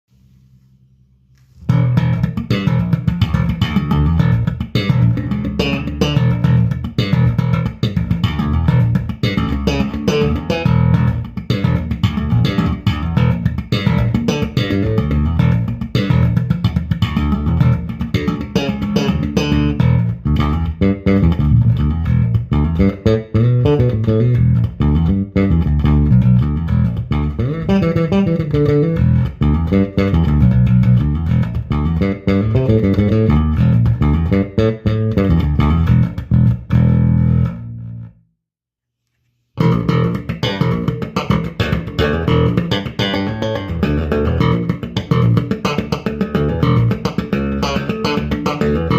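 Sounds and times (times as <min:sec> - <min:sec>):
bass guitar plucked notes: 0:01.5 - 0:38.3, 0:39.6 - 0:48.9.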